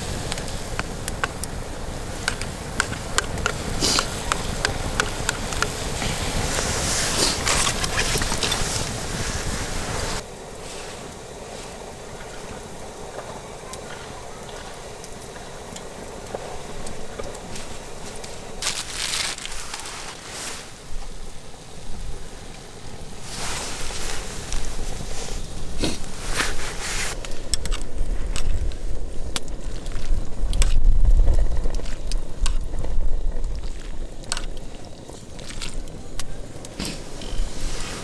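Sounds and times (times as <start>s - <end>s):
rustling: 0.0s - 15.6s, 17.0s - 21.6s, 22.8s - 38.0s
campfire crackling and popping: 0.0s - 38.0s
wind rumble on microphone: 27.1s - 35.0s.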